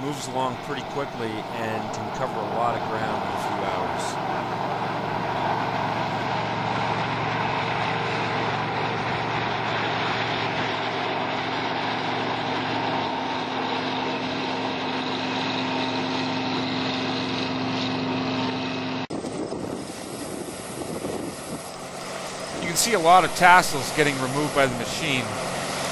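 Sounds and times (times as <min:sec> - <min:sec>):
farm machine running: 0:00.0 - 0:25.9.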